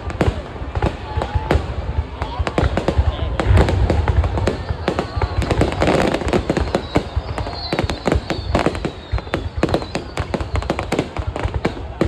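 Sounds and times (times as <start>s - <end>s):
fireworks bangs and crackles: 0.0s - 12.0s
firework whistle: 2.9s - 11.7s.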